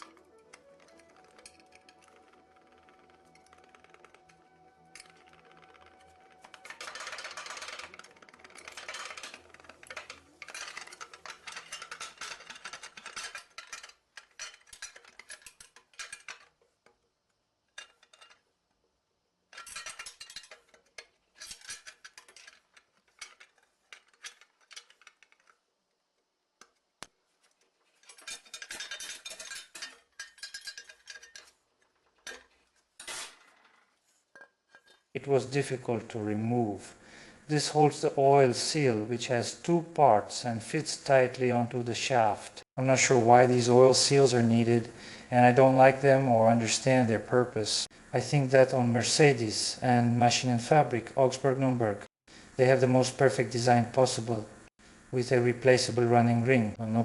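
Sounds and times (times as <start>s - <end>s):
metal tools clinking and ratcheting: 0.0s - 17.1s, 17.7s - 18.6s, 19.5s - 25.6s, 27.4s - 35.6s.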